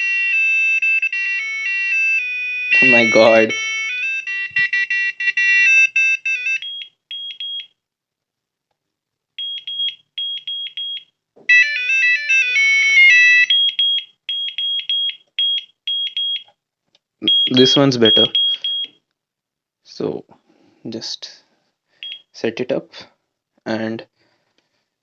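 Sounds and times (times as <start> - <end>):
electronic alarm jingle: 0.0 - 7.7, 9.4 - 16.4, 17.2 - 18.9
short high alarm beeps: 17.3 - 19.0.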